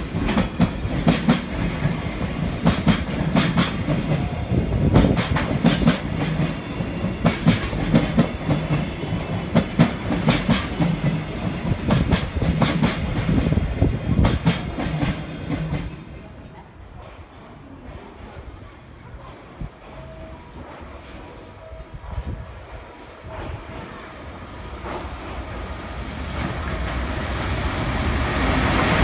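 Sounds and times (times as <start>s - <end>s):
train low rumble: 0.0s - 29.0s.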